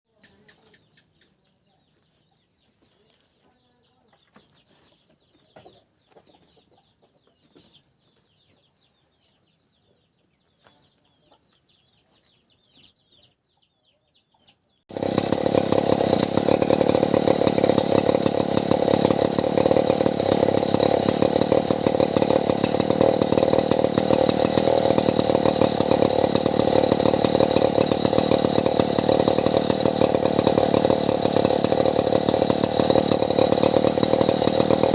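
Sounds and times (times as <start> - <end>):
chainsaw running: 14.9 - 34.9.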